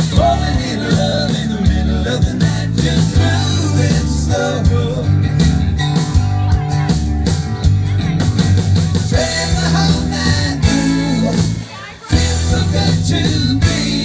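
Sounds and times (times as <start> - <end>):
live country band playing: 0.0 - 14.0
electric guitar lead: 4.4 - 14.0.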